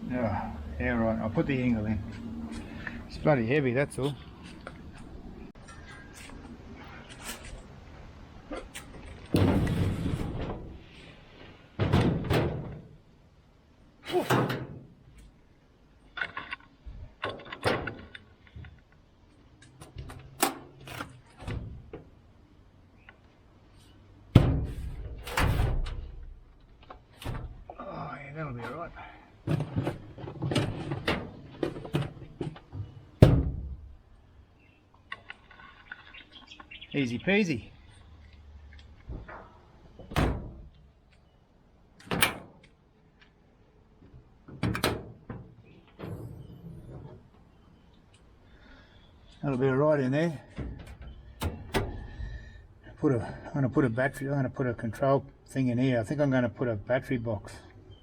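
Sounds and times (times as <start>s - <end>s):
metal bracket knocks and clunks: 11.8s - 13.0s, 50.4s - 52.2s.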